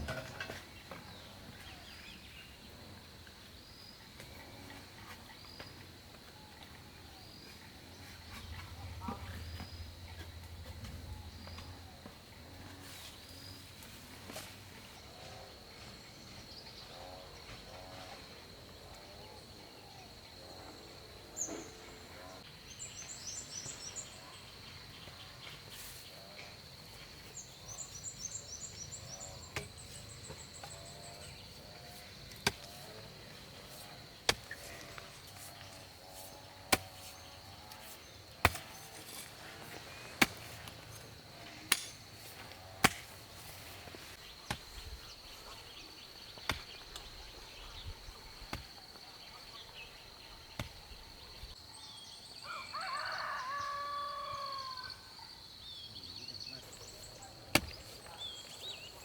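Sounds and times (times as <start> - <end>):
birds chirping: 21.1 - 59.0.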